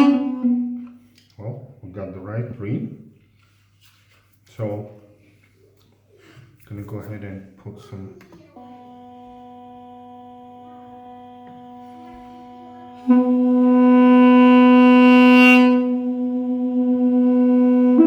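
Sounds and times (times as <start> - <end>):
duduk holding a low note: 0.0 - 1.0, 8.6 - 18.0.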